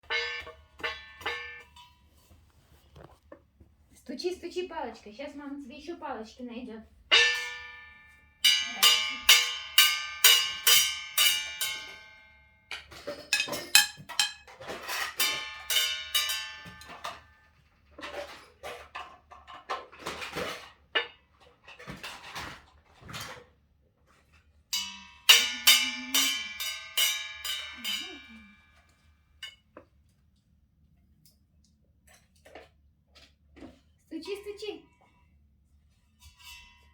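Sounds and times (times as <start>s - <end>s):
toy drum hits: 0.0s - 1.7s, 7.1s - 12.2s, 13.3s - 14.4s, 15.2s - 17.1s, 24.8s - 28.5s.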